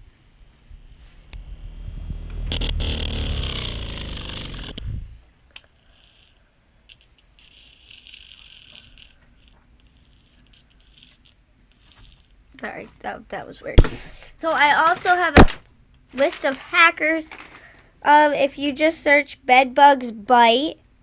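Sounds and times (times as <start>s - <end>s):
fan motor whine: 0.0s - 12.3s.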